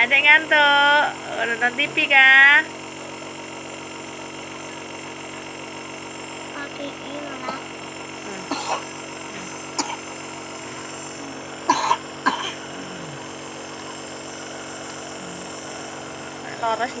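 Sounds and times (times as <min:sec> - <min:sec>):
nebulizer compressor hum: 0:00.0 - 0:17.0
baby coughing: 0:06.7 - 0:14.1.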